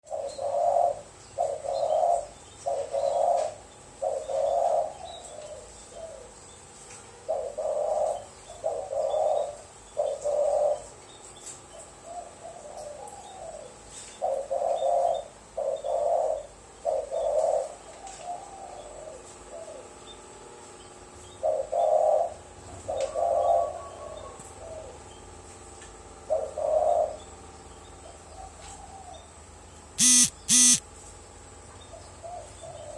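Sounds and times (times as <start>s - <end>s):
dove cooing: 0.1s - 6.4s, 7.3s - 10.9s, 12.1s - 19.9s, 21.4s - 25.0s, 26.3s - 27.2s
faint small-bird chirps: 30.0s - 30.8s.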